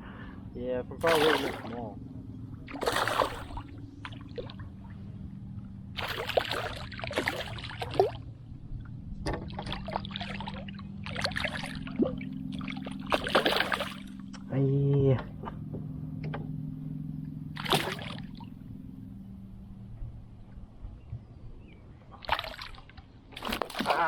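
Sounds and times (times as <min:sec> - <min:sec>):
steady low hum: 0:00.0 - 0:24.0
water splashing and trickling: 0:01.0 - 0:01.9, 0:02.6 - 0:05.1, 0:05.9 - 0:14.4, 0:17.5 - 0:18.6, 0:22.1 - 0:24.0.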